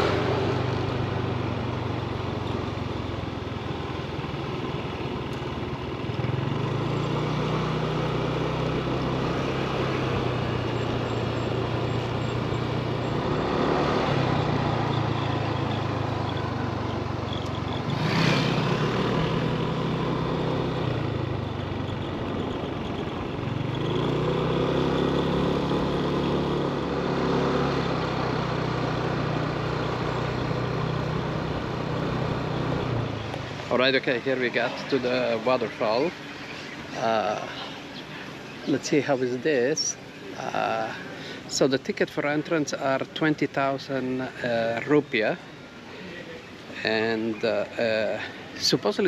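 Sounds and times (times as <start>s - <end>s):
vehicle engine while driving: 0.0s - 49.0s
vehicle rushing past: 13.0s - 16.2s, 17.8s - 21.2s.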